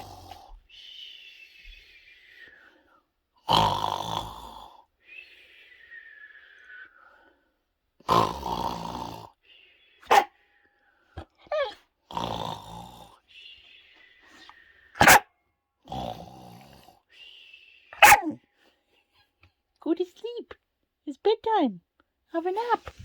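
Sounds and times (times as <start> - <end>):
dog growly grumbling: 0.0 - 0.6, 11.2 - 13.2, 15.9 - 17.0
dog barking: 10.0 - 10.4, 15.0 - 15.3, 18.0 - 18.4
dog whining: 11.4 - 11.8, 18.0 - 18.4.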